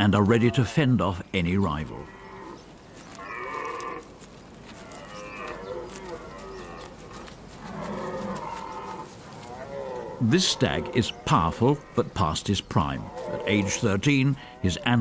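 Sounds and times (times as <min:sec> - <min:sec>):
deer stags roaring: 0:01.9 - 0:15.0.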